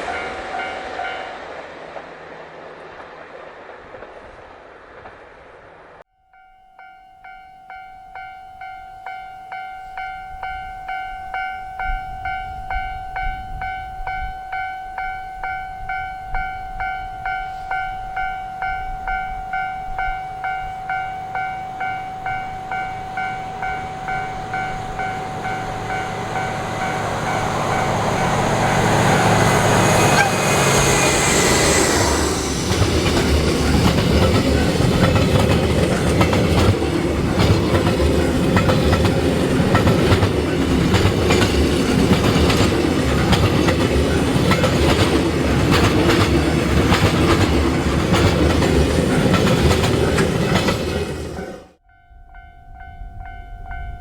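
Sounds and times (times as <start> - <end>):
train wheels rumbling on rails: 0.0 - 6.1, 15.0 - 51.8
level-crossing warning bell: 6.1 - 54.0.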